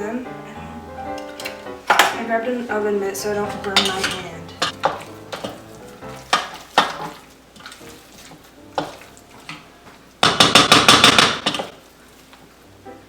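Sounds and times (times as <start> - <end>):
spoon clanking against a pot: 3.4 - 11.8.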